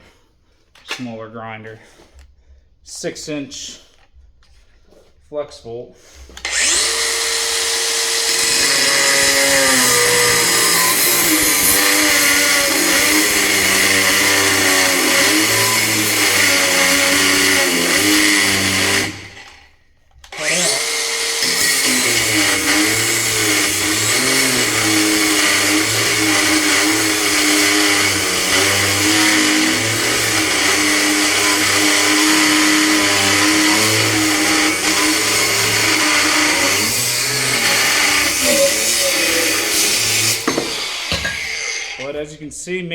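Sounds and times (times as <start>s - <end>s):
angle grinder cutting steel: 6.4s - 42.2s.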